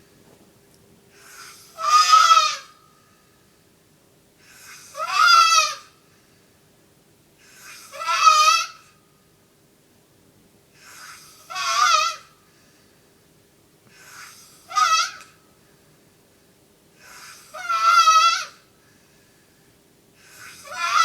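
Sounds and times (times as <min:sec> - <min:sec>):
man snoring with high squeal: 0:04.5 - 0:05.0, 0:10.8 - 0:11.5, 0:14.0 - 0:14.7, 0:17.0 - 0:17.9, 0:20.2 - 0:21.0.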